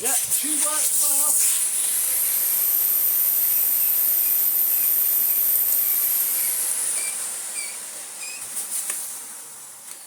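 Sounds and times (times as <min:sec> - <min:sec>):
vacuum cleaner whine winding down: 0:01.6 - 0:07.7.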